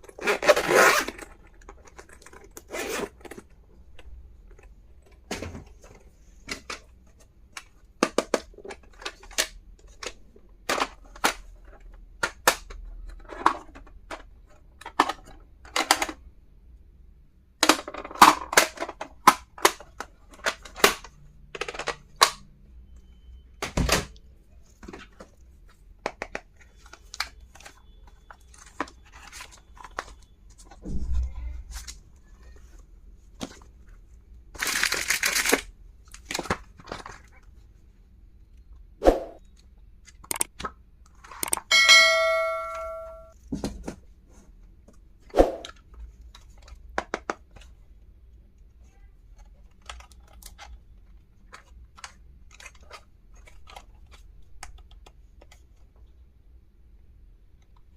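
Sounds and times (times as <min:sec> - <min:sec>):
plastic items clicking and tapping: 0:03.2 - 0:16.3, 0:17.6 - 0:22.5, 0:23.6 - 0:30.8, 0:40.0 - 0:41.7, 0:45.6 - 0:47.8, 0:49.3 - 0:55.8.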